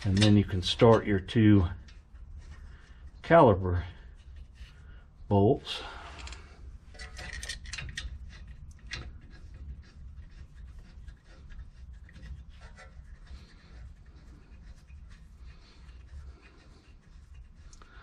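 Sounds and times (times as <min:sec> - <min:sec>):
metallic clicks and scrapes of bolts: 0:00.0 - 0:02.0, 0:05.7 - 0:09.7
low steady hum: 0:00.0 - 0:18.0.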